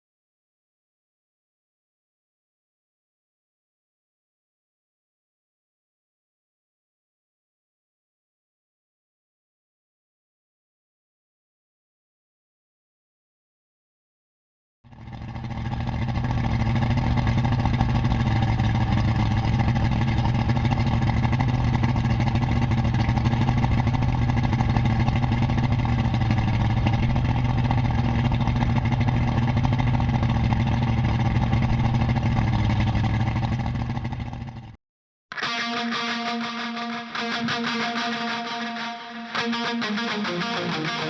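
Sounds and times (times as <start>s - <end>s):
engine running steadily: 14.9s - 34.8s.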